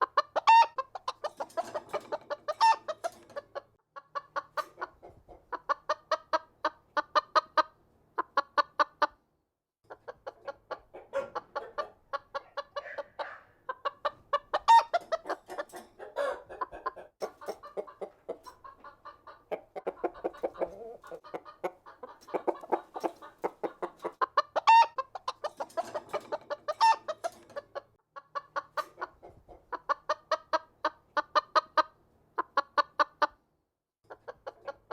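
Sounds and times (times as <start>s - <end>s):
chickens clucking: 0.0s - 9.3s, 9.9s - 33.4s, 34.1s - 34.9s.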